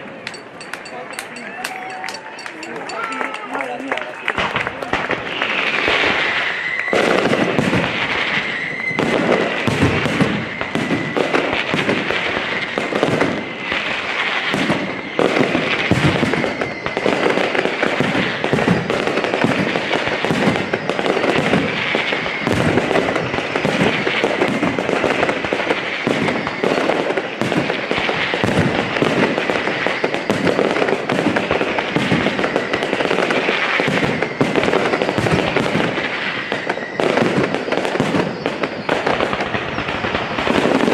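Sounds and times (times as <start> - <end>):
fireworks bangs and crackles: 0.0 - 40.9
thin high whistle: 0.3 - 3.4.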